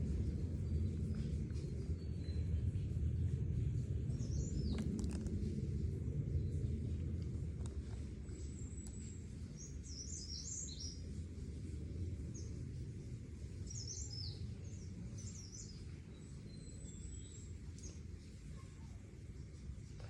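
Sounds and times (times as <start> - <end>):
steady low rumble: 0.0 - 20.0
small birds chirping: 4.1 - 5.3, 7.4 - 11.2, 12.3 - 20.0.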